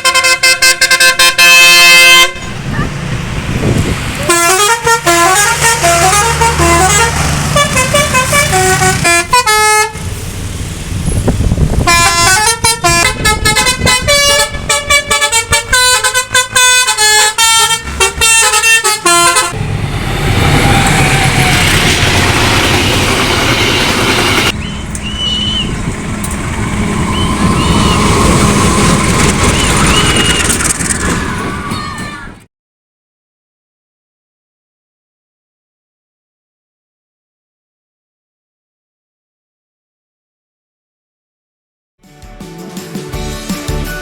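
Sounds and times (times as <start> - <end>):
bus melody horn: 0.0 - 2.6, 4.2 - 10.1, 11.8 - 19.6, 20.9 - 30.6
engine and traffic noise: 0.0 - 32.5.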